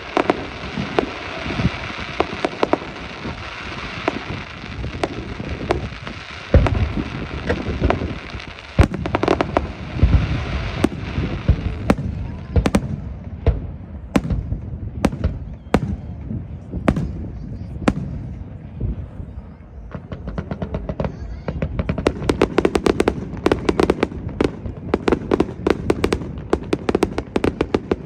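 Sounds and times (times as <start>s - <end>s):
sharp fireworks bangs: 0.0s - 19.0s, 19.8s - 28.0s
fireworks booming: 0.0s - 28.0s
fireworks crackling: 0.0s - 28.0s.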